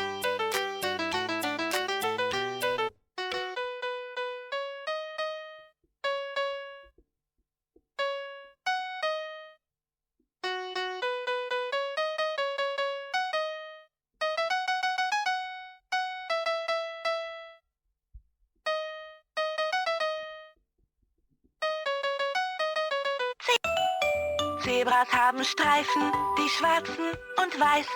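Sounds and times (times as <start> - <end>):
toy playing electronic melody: 0.0 - 6.9, 11.0 - 17.6, 21.6 - 27.9.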